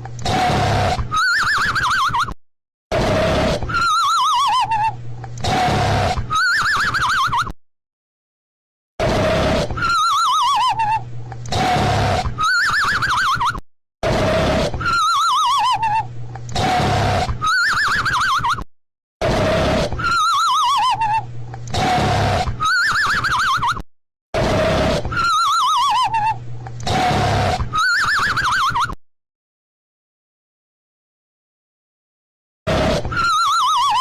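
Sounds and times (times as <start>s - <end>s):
raspy snore: 5.4s - 6.3s, 11.5s - 12.4s, 16.6s - 17.4s, 21.7s - 22.6s, 26.9s - 27.7s.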